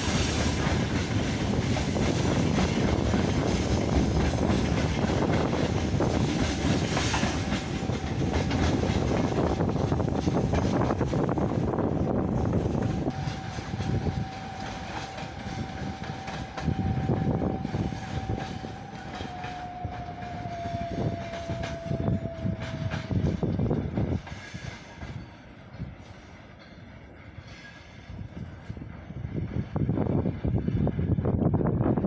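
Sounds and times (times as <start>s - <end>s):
long steady high tone: 13.0s - 23.1s.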